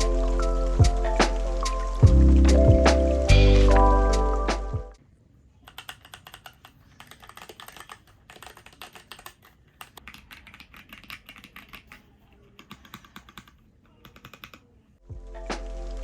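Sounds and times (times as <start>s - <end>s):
loud music: 0.0s - 5.0s
mechanical keyboard key clacks: 5.7s - 14.6s.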